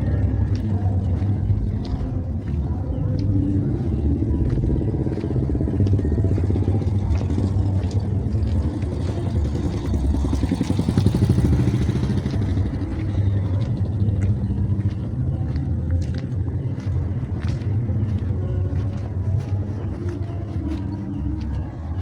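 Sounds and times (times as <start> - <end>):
road and wind noise: 0.0 - 22.0
vehicle engine running: 0.0 - 22.0.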